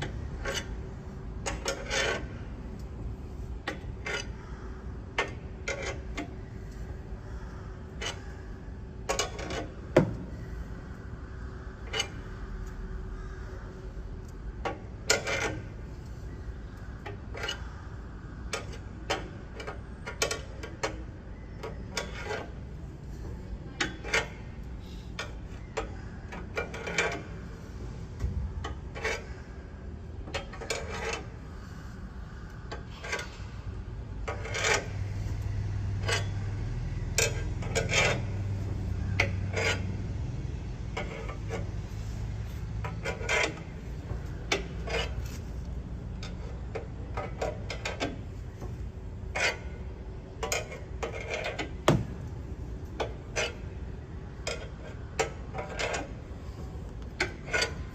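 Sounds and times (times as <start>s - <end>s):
metal tool clicks and scrapes: 1.4s - 2.9s, 28.6s - 29.4s, 30.3s - 31.3s, 32.7s - 33.6s, 34.2s - 48.6s, 49.3s - 49.8s, 50.4s - 51.8s, 52.9s - 53.7s, 54.3s - 57.9s.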